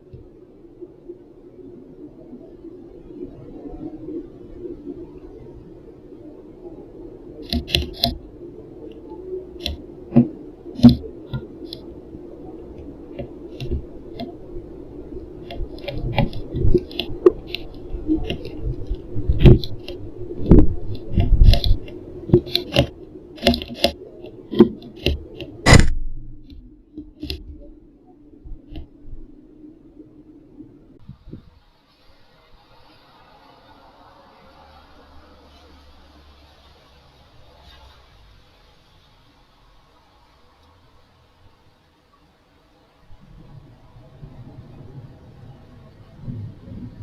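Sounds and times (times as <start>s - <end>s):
steady low hum: 0.0s - 47.0s
sharp taps and knocks: 15.4s - 27.6s.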